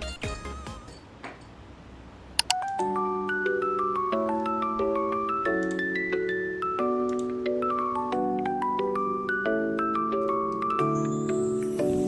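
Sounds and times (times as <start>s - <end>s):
light pop tune with chimes: 2.5s - 12.0s.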